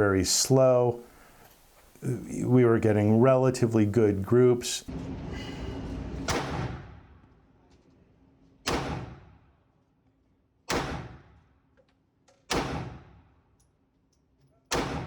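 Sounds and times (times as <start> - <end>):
pistol shots: 6.3 - 7.0, 8.6 - 9.4, 10.7 - 11.4, 12.5 - 13.2, 14.7 - 15.0.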